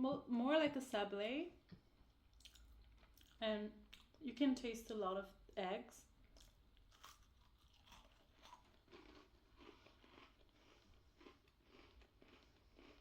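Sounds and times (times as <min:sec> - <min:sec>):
chewing crumbly cookie: 0:02.3 - 0:04.2, 0:06.3 - 0:13.0.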